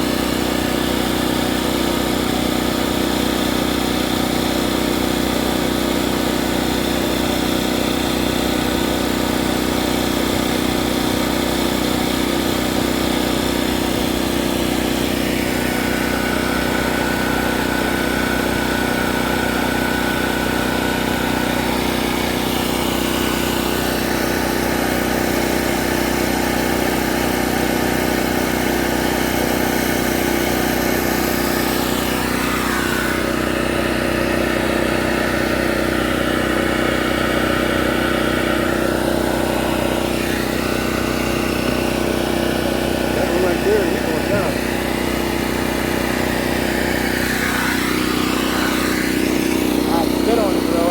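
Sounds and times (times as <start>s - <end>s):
motor idling: 0.0s - 50.9s.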